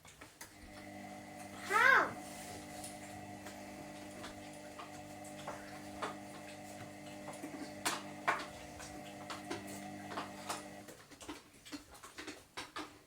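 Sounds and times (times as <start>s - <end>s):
washing machine humming: 0.5s - 10.9s.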